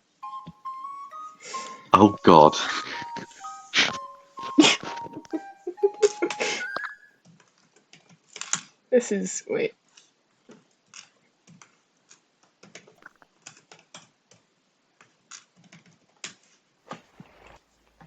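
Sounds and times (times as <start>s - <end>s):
faint typing on computer keyboard: 7.2s - 8.6s, 10.0s - 16.6s.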